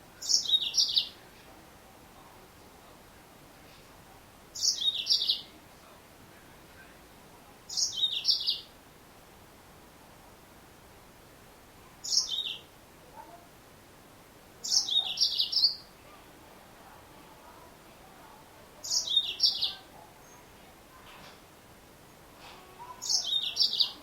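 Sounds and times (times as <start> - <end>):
bird chirping: 0.2 - 1.2, 4.6 - 5.5, 7.7 - 8.7, 12.0 - 12.7, 14.6 - 15.9, 18.8 - 20.5, 22.9 - 24.0.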